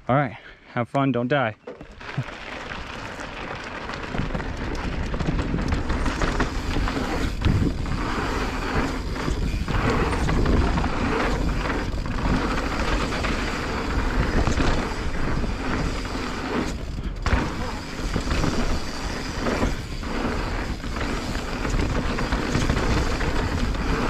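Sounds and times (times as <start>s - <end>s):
bike knocking and rattling: 1.6s - 24.0s
bike tyres on dirt trail: 1.6s - 24.0s.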